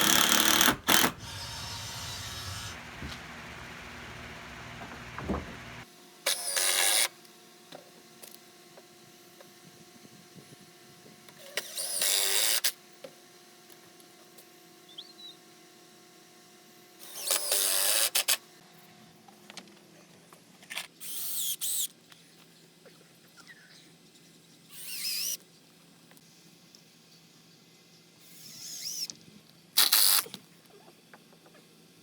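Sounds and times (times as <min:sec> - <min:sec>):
power drill driving screws: 0:00.0 - 0:07.1.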